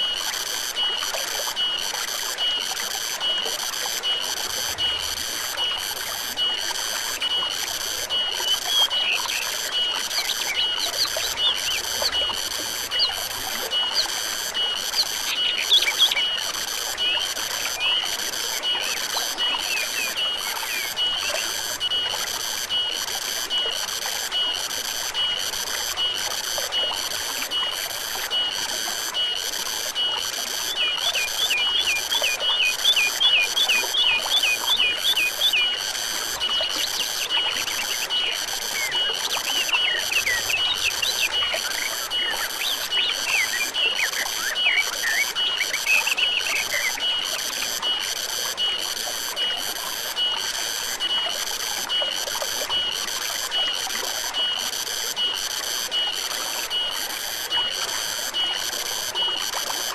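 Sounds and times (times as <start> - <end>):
insect chorus pulsing: 0.0 - 59.9
bird chirps: 14.9 - 16.3.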